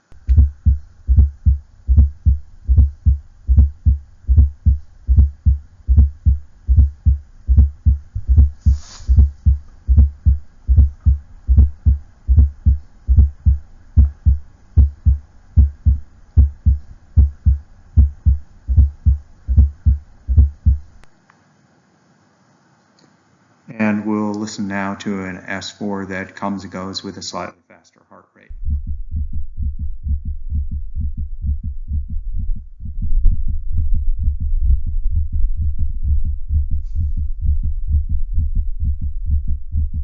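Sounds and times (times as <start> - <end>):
heartbeat thuds: 0.0 - 21.1, 28.5 - 40.0
atrial gallop heart sound: 0.1 - 21.0, 28.5 - 40.0
brief hiss: 8.6 - 9.4.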